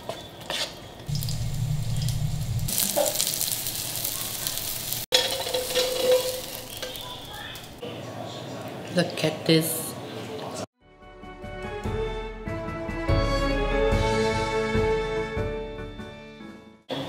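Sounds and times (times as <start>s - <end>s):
batter sizzling in hot oil: 1.1s - 7.8s.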